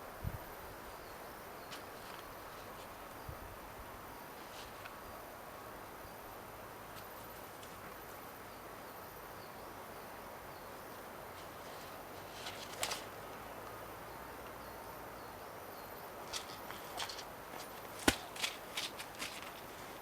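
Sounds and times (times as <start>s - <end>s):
steady hiss: 0.0s - 20.0s
sharp snap: 18.0s - 19.3s.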